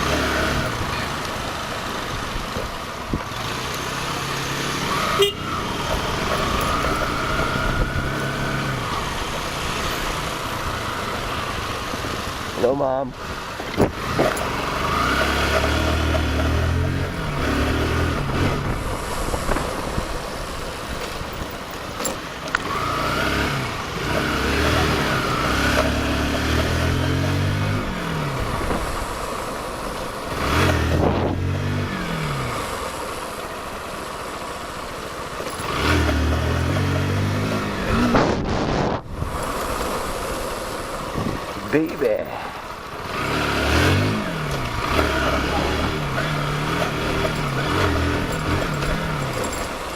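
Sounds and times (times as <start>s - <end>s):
motorcycle engine accelerating: 0.0s - 49.9s
wind noise on microphone: 17.1s - 21.7s, 27.6s - 29.2s, 30.3s - 32.0s, 37.7s - 40.4s, 41.0s - 41.7s.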